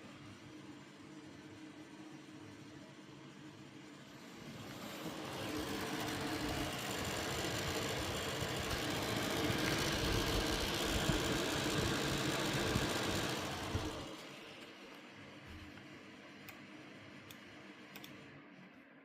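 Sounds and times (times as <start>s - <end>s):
graphics card fans grinding: 4.5s - 14.4s.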